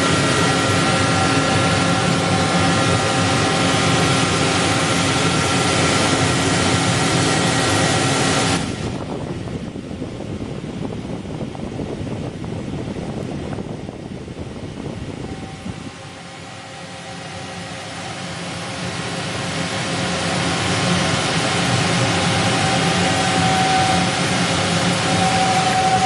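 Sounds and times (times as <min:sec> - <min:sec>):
lathe running: 0:00.0 - 0:09.0, 0:15.1 - 0:26.0
steady whine: 0:00.0 - 0:26.0.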